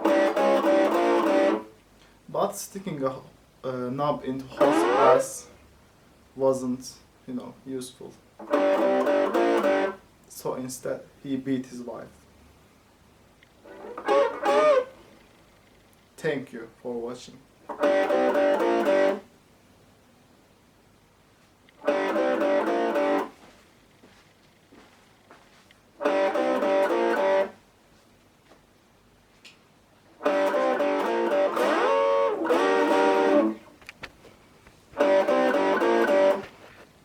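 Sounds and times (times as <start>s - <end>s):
guitar playing: 0.0s - 1.8s, 4.4s - 5.5s, 8.4s - 10.0s, 13.6s - 15.0s, 17.6s - 19.3s, 21.8s - 23.4s, 26.0s - 27.6s, 30.1s - 33.8s, 35.0s - 36.5s.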